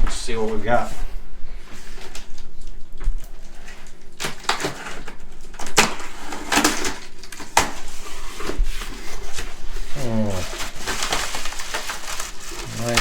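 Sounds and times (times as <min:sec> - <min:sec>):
cardboard box being opened: 0:04.2 - 0:13.0.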